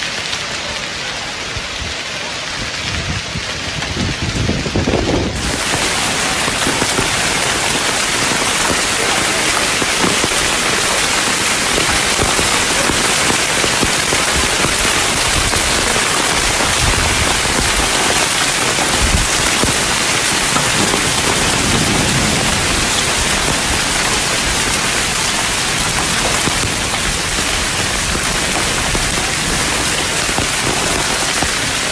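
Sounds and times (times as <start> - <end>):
heavy rain with hail: 0.0 - 31.9.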